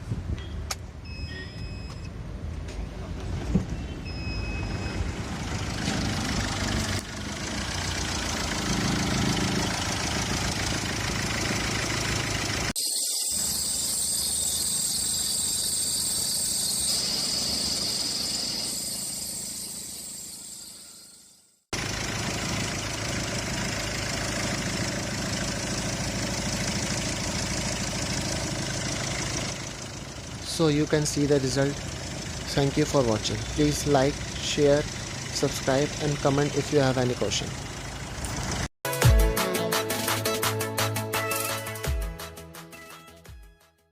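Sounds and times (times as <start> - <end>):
car engine running: 5.1 - 12.8, 21.8 - 38.7
high-pitched sound: 12.8 - 21.5.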